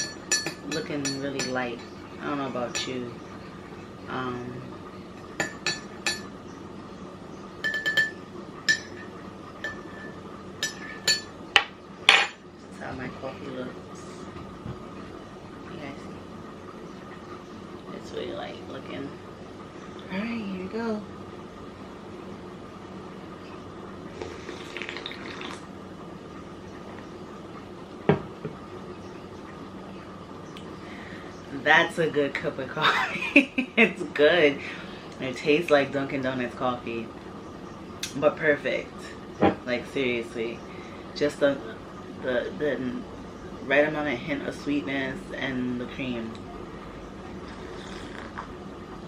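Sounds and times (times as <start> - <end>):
faint steady hum: 0.0 - 49.0
spoon clinking in cup: 7.6 - 11.3
coffee slurped from cup: 24.1 - 25.6, 47.4 - 48.5.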